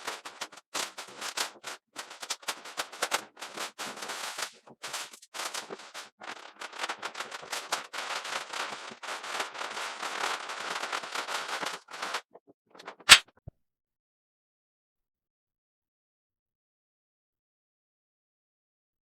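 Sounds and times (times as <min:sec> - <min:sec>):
sharp snap: 0:13.0 - 0:13.3.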